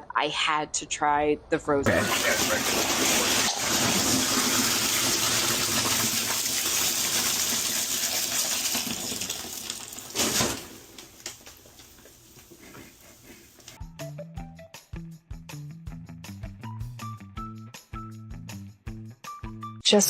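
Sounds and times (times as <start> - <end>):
gushing splashing water: 1.9 - 13.7.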